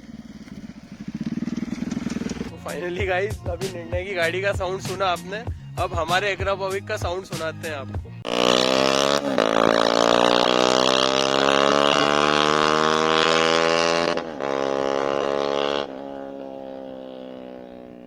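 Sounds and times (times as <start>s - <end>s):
motorcycle engine accelerating hard: 0.0s - 2.6s, 8.2s - 18.0s.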